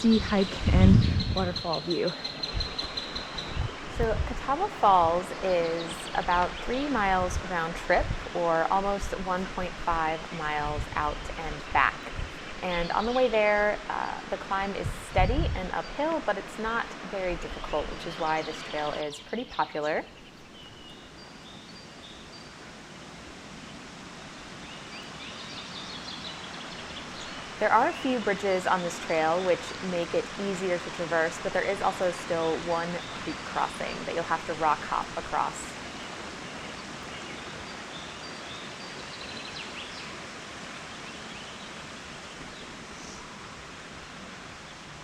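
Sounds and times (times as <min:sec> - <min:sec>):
stream water flowing: 0:20.3 - 0:45.0.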